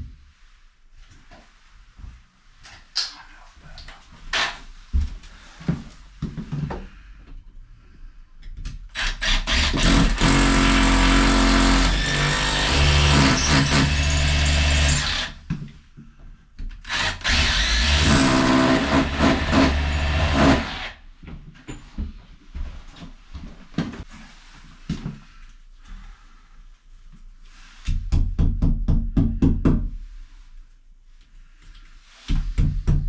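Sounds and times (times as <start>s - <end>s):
power tool motor running: 16.9s - 20.9s.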